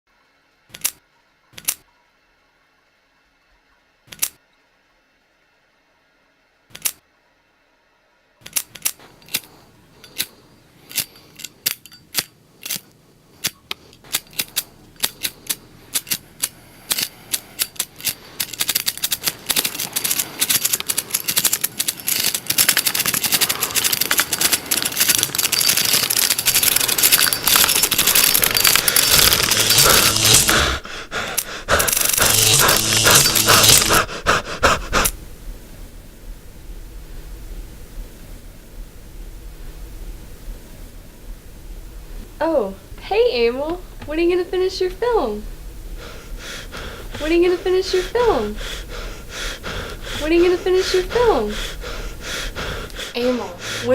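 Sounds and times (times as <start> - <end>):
sharp pops and crackle: 8.4 - 35.2.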